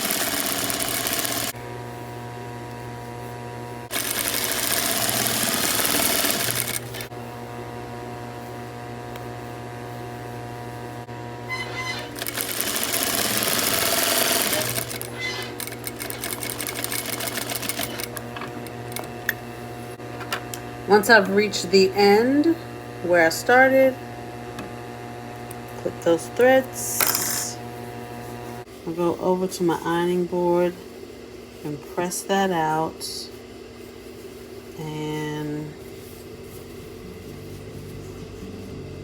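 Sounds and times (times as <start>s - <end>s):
sewing machine stitching: 0.0s - 1.5s, 3.9s - 7.1s, 11.5s - 19.1s.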